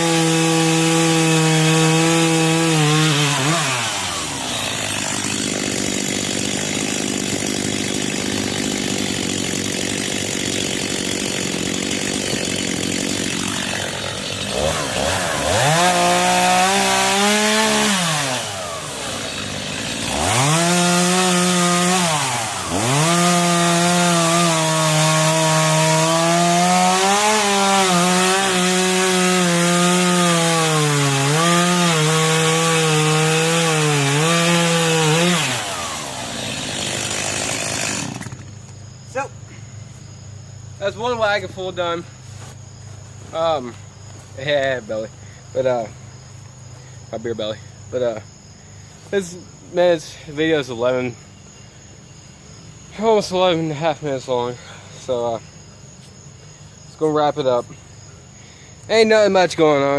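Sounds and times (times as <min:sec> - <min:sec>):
chainsaw cutting wood: 0:00.0 - 0:39.3.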